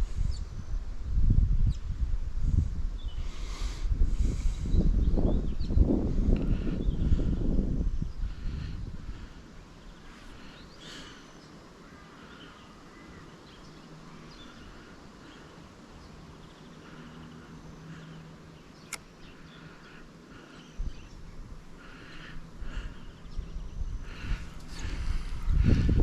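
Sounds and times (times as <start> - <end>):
birds calling and chirping: 3.0 - 26.0
sharp click: 18.8 - 19.1.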